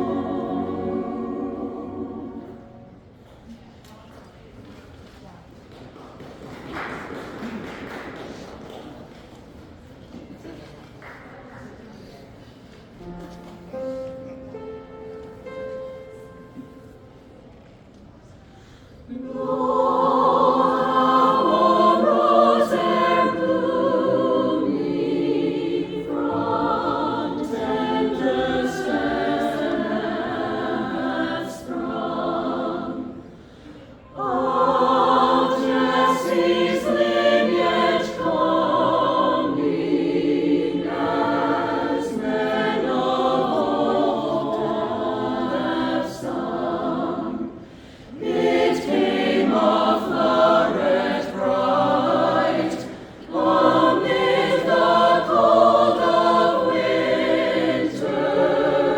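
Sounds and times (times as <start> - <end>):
choir singing: 0.0 - 3.2, 19.1 - 58.9.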